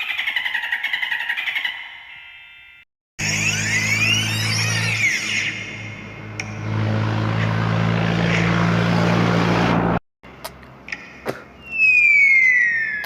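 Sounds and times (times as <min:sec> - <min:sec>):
engine-like rumble: 0:03.2 - 0:11.6
whistle falling in pitch: 0:11.6 - 0:13.0.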